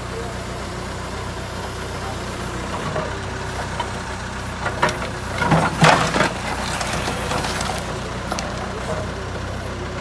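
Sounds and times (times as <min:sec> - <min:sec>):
backhoe diesel engine running: 0:00.0 - 0:10.0
sharp knocks and clatters: 0:04.6 - 0:09.1.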